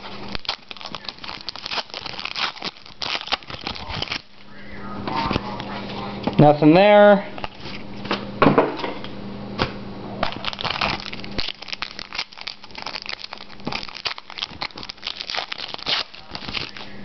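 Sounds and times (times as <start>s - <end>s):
plastic wrapper crinkling: 0.0s - 4.4s, 10.2s - 17.0s.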